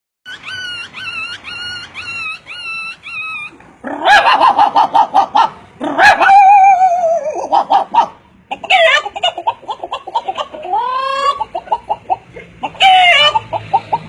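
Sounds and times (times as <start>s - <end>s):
man imitating dog whimpers: 0.3s - 5.1s, 5.8s - 8.0s, 10.3s - 11.4s, 12.7s - 13.4s.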